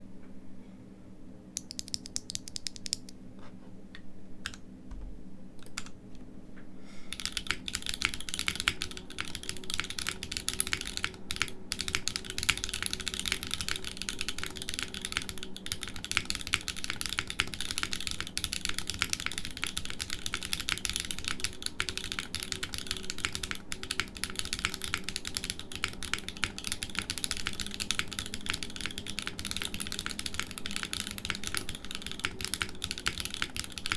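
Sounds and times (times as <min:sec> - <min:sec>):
typing on mechanical keyboard: 0:01.6 - 0:03.1, 0:07.1 - 0:33.9.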